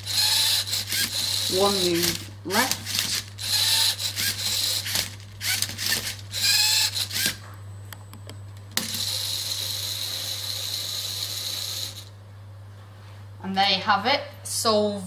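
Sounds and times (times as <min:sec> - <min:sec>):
robot motors whirring and clicking: 0:00.0 - 0:07.4
motor high whine: 0:00.0 - 0:07.8, 0:08.8 - 0:12.2.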